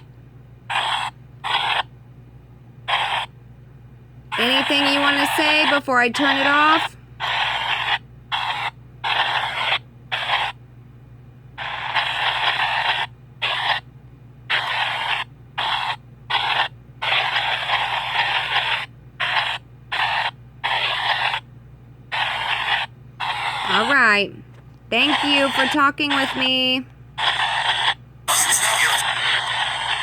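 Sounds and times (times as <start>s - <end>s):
steady low hum: 0.0s - 30.0s
radio static bursts: 4.4s - 10.5s, 22.1s - 24.3s, 24.9s - 30.0s.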